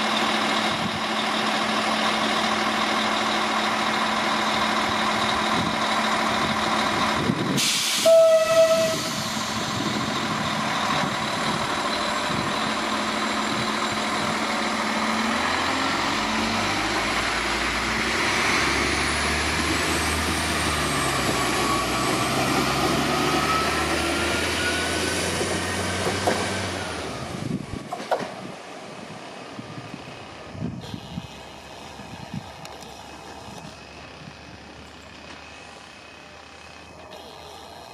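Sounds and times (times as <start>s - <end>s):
diesel engine revving: 0.0s - 37.9s
train horn blast: 8.0s - 9.2s.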